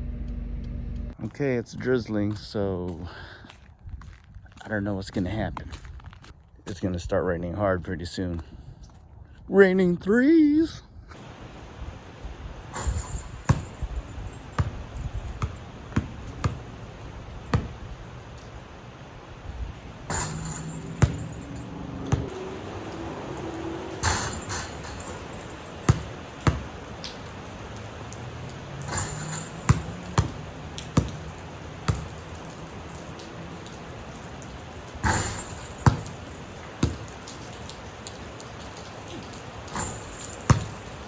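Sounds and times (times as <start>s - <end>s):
basketball bouncing on pavement: 12.8s - 18.1s, 20.1s - 22.4s, 24.0s - 27.4s, 28.8s - 32.8s, 35.0s - 37.6s, 39.7s - 41.0s.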